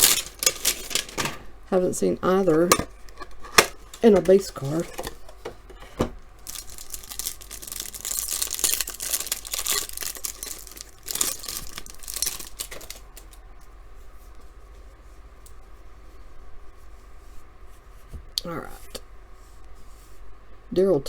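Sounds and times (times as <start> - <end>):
packaging tearing and crinkling: 0.0 - 1.4, 6.4 - 13.4.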